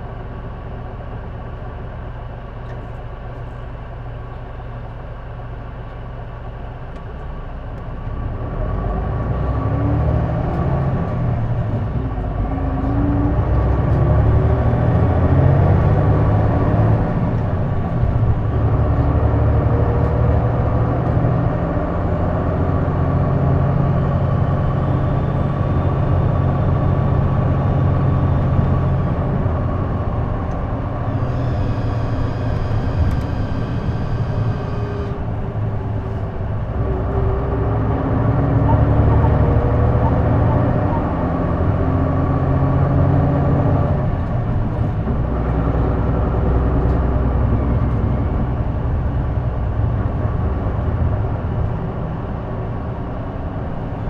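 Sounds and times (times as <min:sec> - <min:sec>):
bus engine running: 0:00.0 - 0:54.0
steady high whine: 0:24.6 - 0:37.0.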